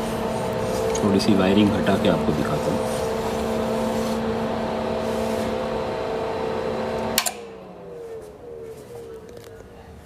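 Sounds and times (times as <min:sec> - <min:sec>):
amplifier cooling fan: 0:00.0 - 0:10.0
power switch click: 0:07.0 - 0:07.5.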